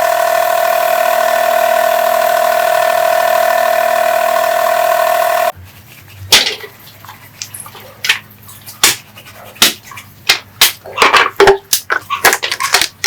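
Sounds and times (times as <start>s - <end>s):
tools and parts clicking: 11.0s - 13.0s.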